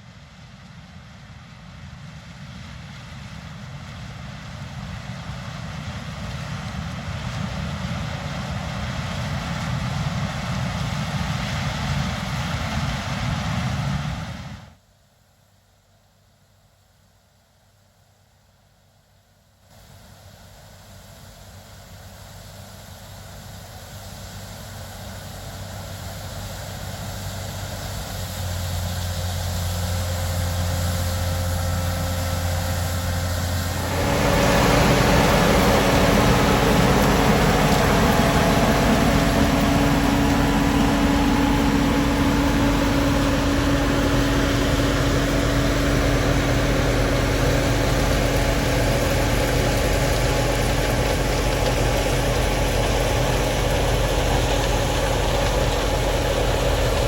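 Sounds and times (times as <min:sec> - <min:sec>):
farm machinery engine running: 0:19.8 - 0:57.0.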